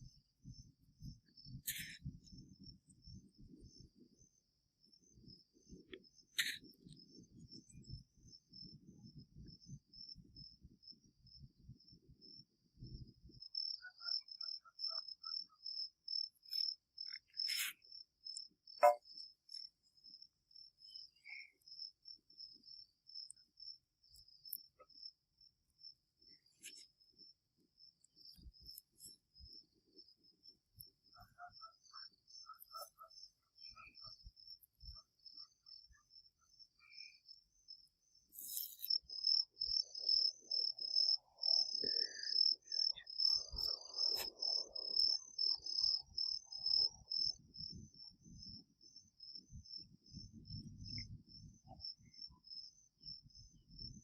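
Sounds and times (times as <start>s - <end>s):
cricket chirping: 0.0s - 54.0s.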